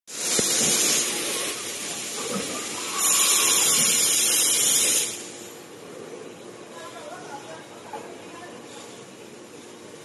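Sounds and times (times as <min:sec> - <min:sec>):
loud steady hiss: 0:00.1 - 0:05.7.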